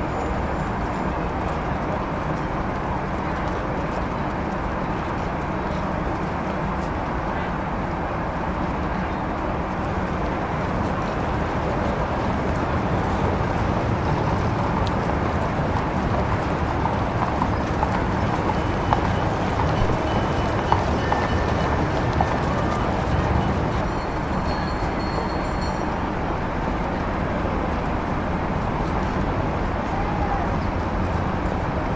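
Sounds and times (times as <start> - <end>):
street traffic din: 0.0 - 31.9
horse hooves clip-clopping: 0.1 - 7.1, 8.6 - 31.9.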